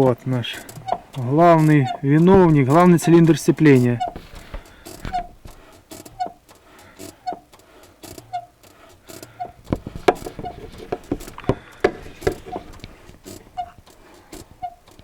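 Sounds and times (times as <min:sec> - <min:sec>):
clutch squeaking in short chirps: 0:00.2 - 0:15.0
clicks and knocks: 0:00.6 - 0:15.0.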